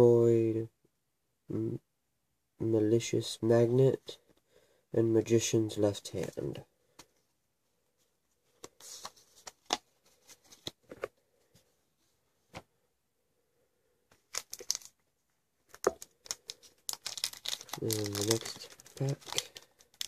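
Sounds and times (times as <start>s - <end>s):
cards rustling: 8.5s - 11.1s, 14.2s - 15.0s, 15.7s - 20.0s
foil wrapper crinkling: 14.3s - 14.9s, 15.7s - 20.0s.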